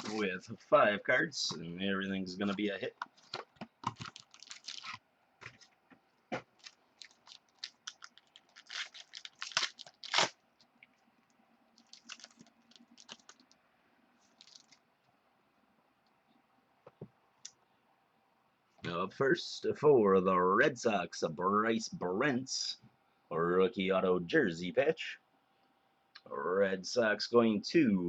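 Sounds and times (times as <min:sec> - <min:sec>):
foil pack crinkling and tearing: 0:00.0 - 0:00.3, 0:03.2 - 0:05.7, 0:06.5 - 0:10.8, 0:11.8 - 0:13.6, 0:14.2 - 0:14.8.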